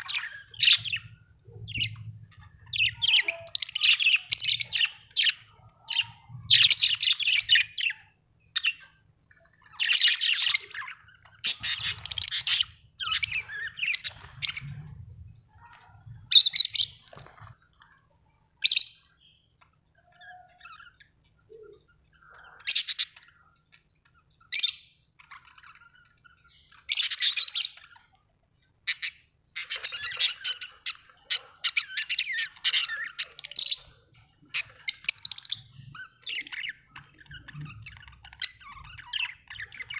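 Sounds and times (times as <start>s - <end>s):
budgerigar chirping: 0.0s - 8.9s, 9.5s - 14.8s, 22.3s - 23.5s, 28.8s - 39.9s.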